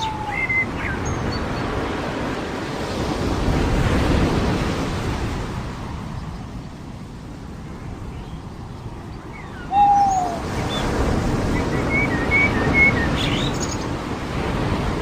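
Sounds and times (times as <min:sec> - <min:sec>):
ocean wave breaking on shore: 0:00.0 - 0:07.6.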